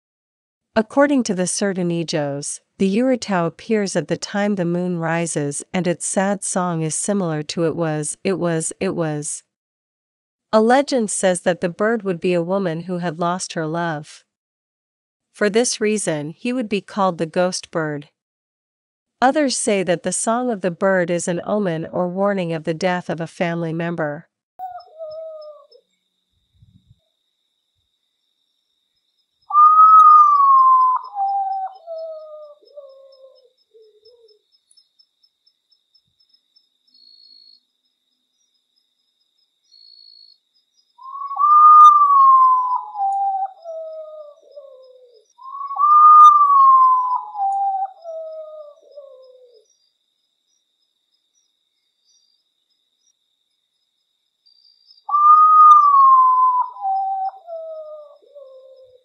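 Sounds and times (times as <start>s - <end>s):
potoo whistled falling song: 29.5s - 32.1s, 41.0s - 43.9s, 45.4s - 48.2s, 55.1s - 57.7s.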